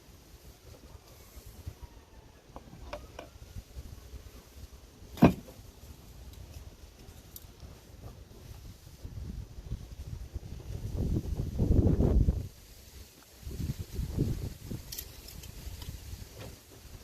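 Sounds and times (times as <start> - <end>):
low wind rumble: 7.9 - 17.0.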